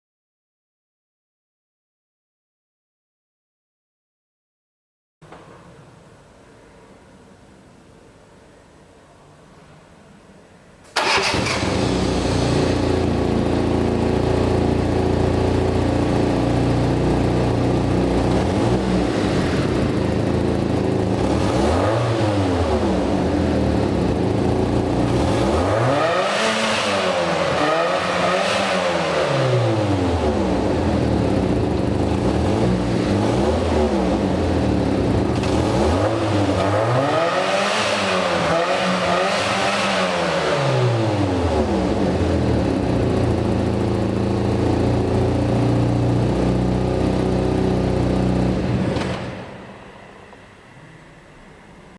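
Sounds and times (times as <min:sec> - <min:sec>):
car engine idling and revving: 0:11.0 - 0:51.5.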